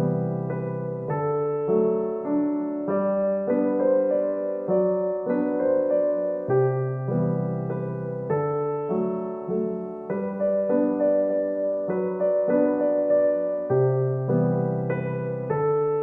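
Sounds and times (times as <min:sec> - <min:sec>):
gentle piano music: 0:00.0 - 0:16.0.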